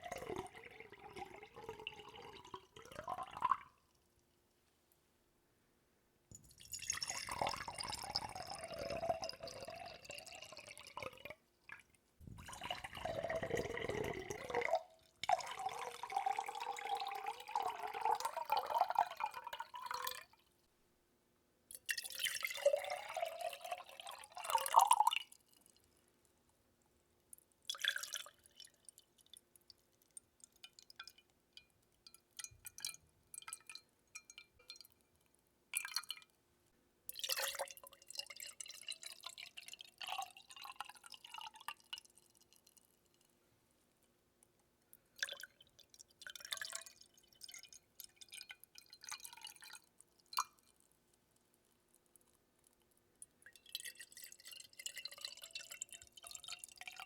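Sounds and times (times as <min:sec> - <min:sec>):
water pouring: 0:00.0 - 0:03.9, 0:06.3 - 0:20.3, 0:21.9 - 0:25.8, 0:27.7 - 0:29.0, 0:37.1 - 0:42.8, 0:45.2 - 0:50.6, 0:53.4 - 0:57.0
water dripping: 0:06.3 - 0:20.5, 0:27.3 - 0:35.2, 0:44.9 - 0:57.0.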